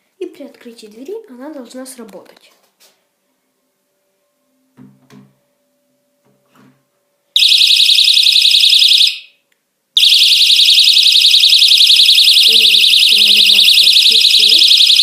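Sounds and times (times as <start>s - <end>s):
door alarm warbling siren: 7.4s - 9.4s, 10.0s - 15.0s.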